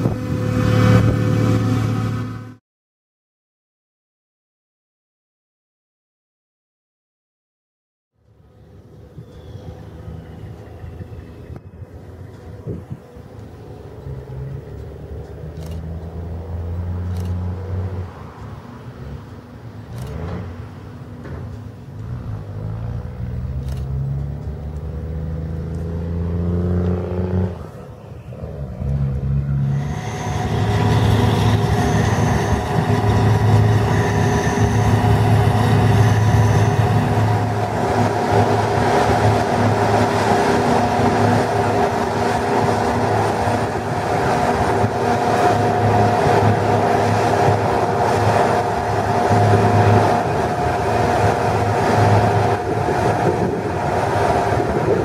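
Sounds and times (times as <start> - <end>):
diesel farm machinery engine: 0.0 - 2.6, 8.2 - 55.0
machinery whine: 8.2 - 17.4, 27.6 - 55.0.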